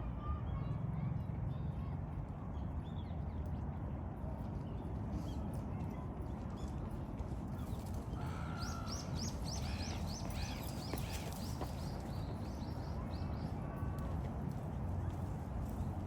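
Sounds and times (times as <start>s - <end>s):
sparrows chirping: 7.8s - 13.5s.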